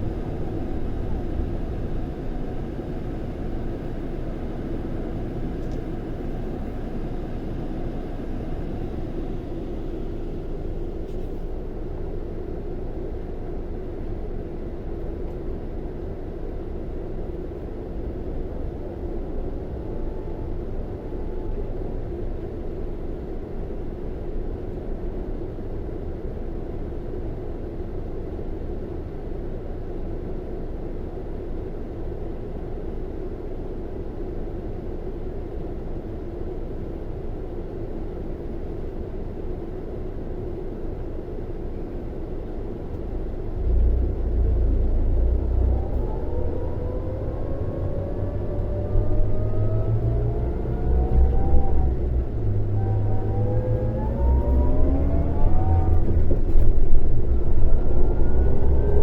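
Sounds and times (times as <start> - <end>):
diesel engine droning: 0.0 - 13.3, 41.7 - 59.0.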